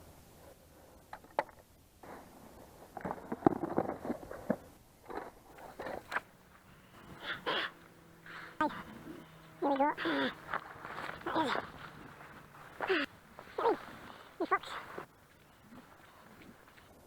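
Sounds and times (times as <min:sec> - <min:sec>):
rustling and scuffing: 0:05.5 - 0:17.0.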